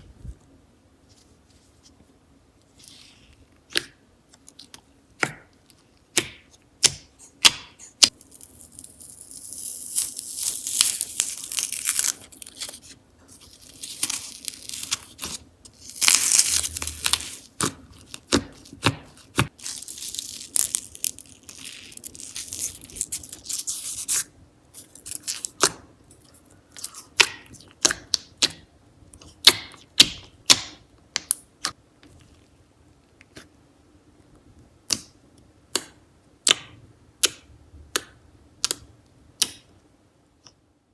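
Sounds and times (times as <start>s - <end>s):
slime crackling and popping: 8.1s - 12.8s, 13.5s - 24.2s.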